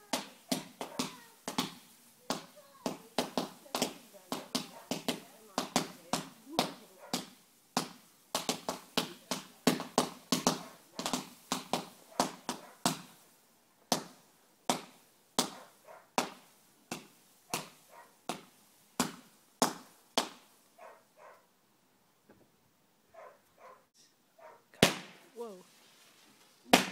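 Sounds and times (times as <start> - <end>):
fireworks bangs with echo: 0.0 - 13.2, 13.9 - 20.5, 24.8 - 25.4, 26.7 - 26.9.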